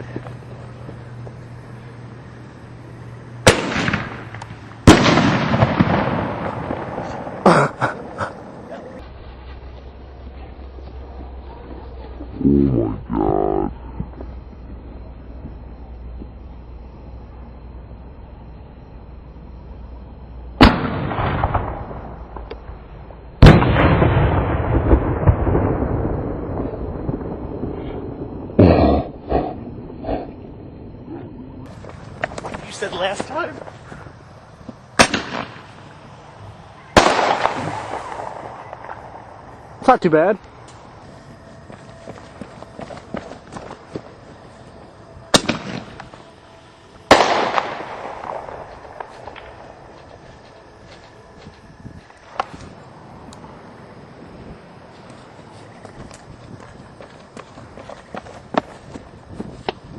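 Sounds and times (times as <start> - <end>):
firework reports with echo: 3.4 - 9.1, 20.6 - 22.8, 23.4 - 28.2, 35.0 - 40.4, 45.3 - 46.2, 47.1 - 50.0
echo with crackling: 34.9 - 39.8, 45.3 - 51.2.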